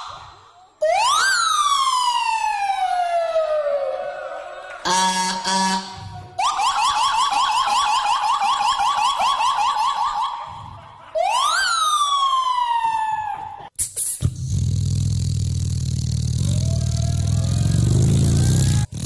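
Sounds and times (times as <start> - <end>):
police siren yelp and wail: 0.0 - 13.7, 16.4 - 19.0
low engine rumble: 14.4 - 19.0.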